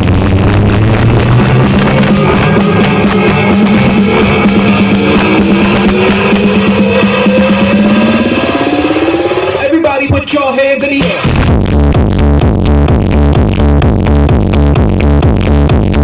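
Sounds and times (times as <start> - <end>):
loud drum-led music: 0.0 - 16.0
tones sliding upward in pitch: 0.7 - 9.6.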